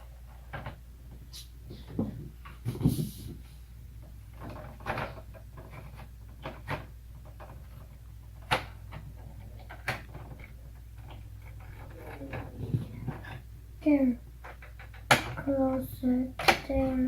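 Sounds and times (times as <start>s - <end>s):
plastic toy clicks and knocks: 4.4s - 13.4s, 14.4s - 15.6s, 16.4s - 17.0s.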